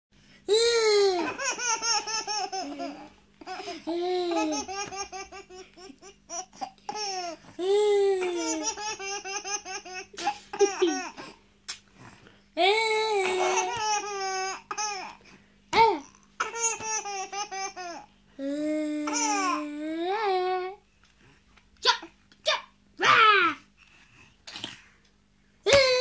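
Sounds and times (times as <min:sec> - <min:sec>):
baby laughing: 0:01.2 - 0:07.4, 0:08.2 - 0:11.3, 0:13.2 - 0:15.1, 0:16.4 - 0:18.1.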